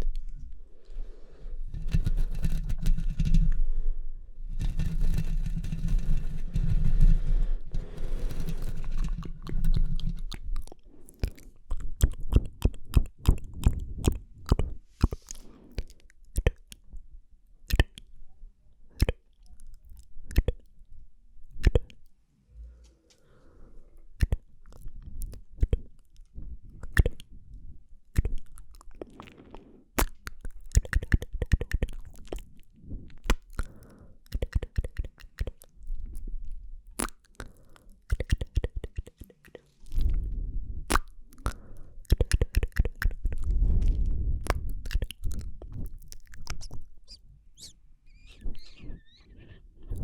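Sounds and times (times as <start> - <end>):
wet mouth clicks and smacks: 8.6 - 17.0, 17.6 - 18.1, 18.9 - 20.7, 21.5 - 22.1, 24.1 - 27.3, 28.0 - 40.3, 40.9 - 49.0
low rumble: 43.2 - 46.0.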